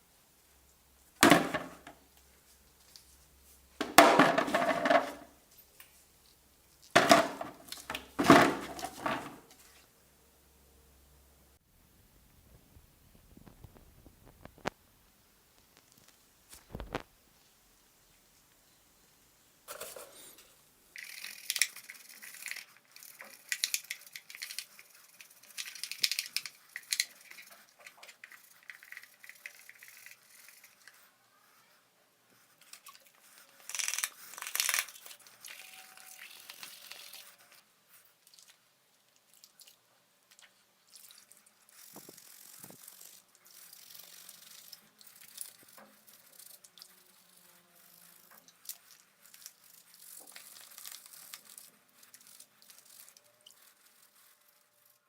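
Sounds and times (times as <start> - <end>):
blender parts clicking and rattling: 3.8 - 5.3
scraping: 3.8 - 5.3, 7.0 - 9.7.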